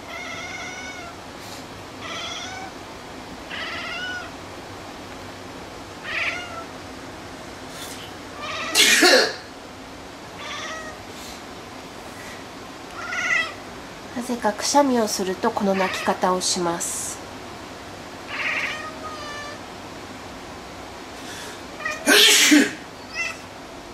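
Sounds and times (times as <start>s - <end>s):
cat meowing: 0.0s - 1.2s, 2.0s - 2.7s, 3.5s - 4.3s, 6.0s - 6.7s, 8.4s - 8.8s, 10.4s - 11.0s, 12.9s - 13.6s, 15.8s - 16.2s, 18.3s - 19.6s, 21.8s - 22.1s, 23.0s - 23.5s
person sneezing: 8.8s - 9.5s, 22.0s - 22.8s.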